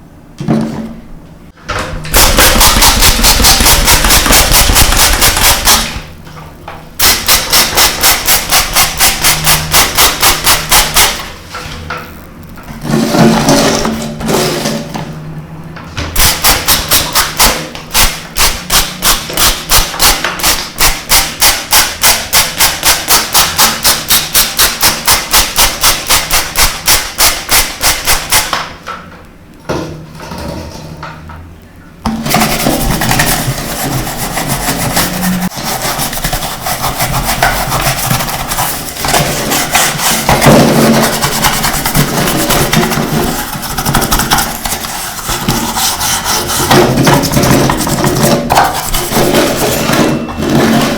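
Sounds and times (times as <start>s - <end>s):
rhythmic rubbing strokes: 2.1s - 6.1s, 7.0s - 11.5s, 32.2s - 50.9s
rasping scrubbing: 32.3s - 49.8s.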